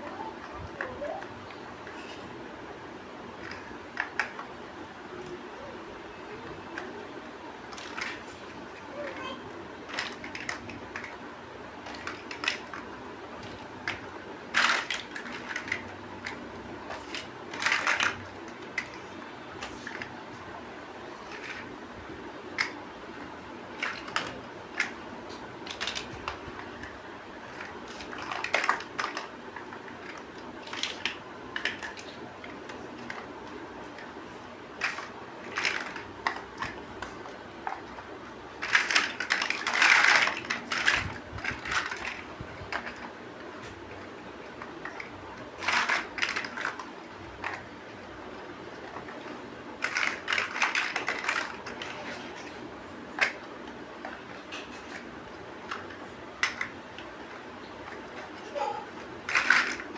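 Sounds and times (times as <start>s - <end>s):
plastic pieces clattering: 7.7s - 8.6s, 9.9s - 11.2s, 11.8s - 20.1s, 21.2s - 21.8s, 22.6s - 34.1s, 34.8s - 59.9s
plastic bricks clicking together: 11.8s - 19.0s, 25.6s - 33.3s, 34.8s - 43.1s, 49.8s - 52.1s, 55.7s - 58.0s, 59.2s - 59.9s.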